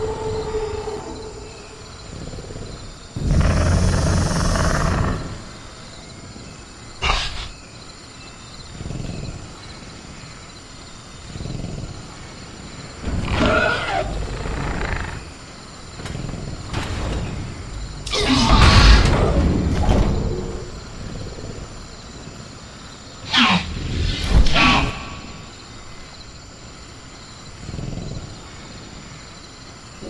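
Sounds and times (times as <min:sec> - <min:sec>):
dinosaur growling and snarling: 0:00.0 - 0:05.8, 0:07.0 - 0:07.6, 0:11.2 - 0:21.9.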